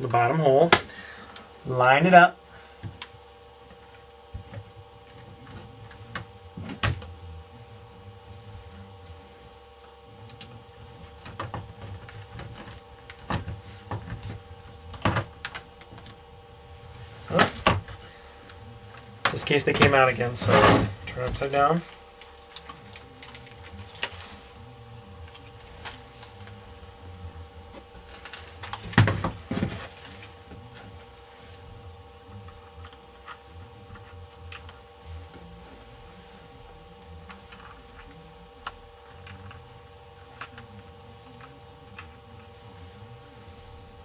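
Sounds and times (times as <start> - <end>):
faint steady hum: 0.0 - 44.0.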